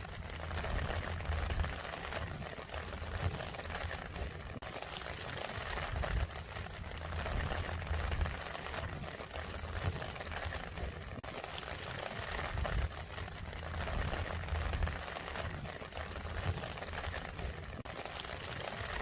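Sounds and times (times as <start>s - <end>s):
low rumble: 0.0s - 4.6s, 5.8s - 11.2s, 12.5s - 17.6s
rain pattering: 0.0s - 19.0s.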